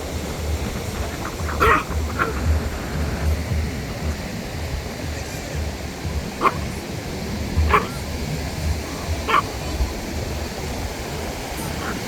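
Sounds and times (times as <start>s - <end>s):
wind rumble on microphone: 0.0s - 12.0s
short animal calls: 1.2s - 2.4s, 6.4s - 6.8s, 7.7s - 8.0s, 9.2s - 9.5s.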